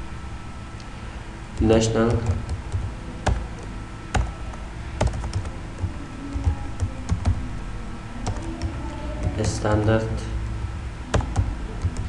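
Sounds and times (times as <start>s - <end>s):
typing on computer keyboard: 5.0s - 7.4s, 8.2s - 9.5s, 11.1s - 12.0s.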